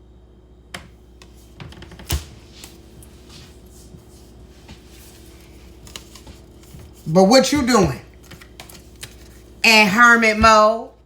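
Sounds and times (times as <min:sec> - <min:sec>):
faint steady hum: 0:00.0 - 0:11.0
cards tapping on table: 0:00.8 - 0:03.5.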